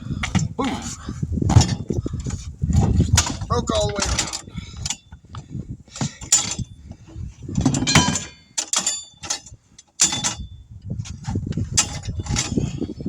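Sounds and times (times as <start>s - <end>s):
sharp metal knocks ringing: 1.5s - 1.9s, 7.6s - 10.6s
tools clanking on steel wheel rim: 1.5s - 13.0s.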